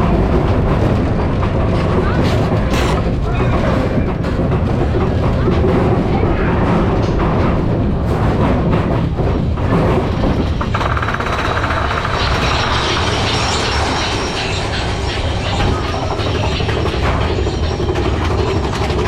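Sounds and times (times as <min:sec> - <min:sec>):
roller coaster cars rumbling: 0:00.0 - 0:19.0.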